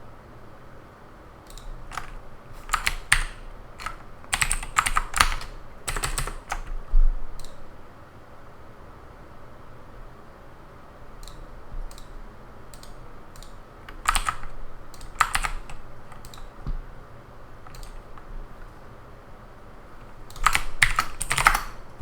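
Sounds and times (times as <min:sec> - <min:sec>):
computer keyboard typing: 0:01.5 - 0:06.8, 0:11.2 - 0:16.9, 0:17.6 - 0:18.8, 0:20.0 - 0:22.0.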